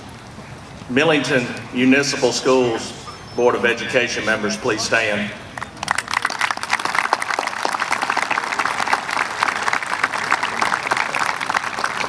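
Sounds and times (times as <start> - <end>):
crowd applauding: 5.4 - 12.0.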